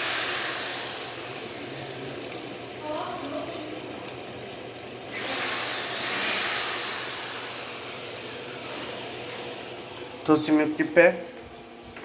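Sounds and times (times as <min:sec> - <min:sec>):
loud water hiss: 0:00.0 - 0:01.8, 0:05.1 - 0:08.4
water rushing into washing machine: 0:00.0 - 0:12.0.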